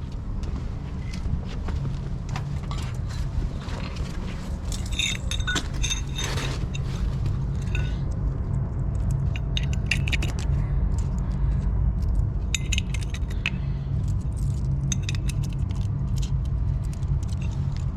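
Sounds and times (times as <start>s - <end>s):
metal anchors clinking: 4.3s - 8.0s.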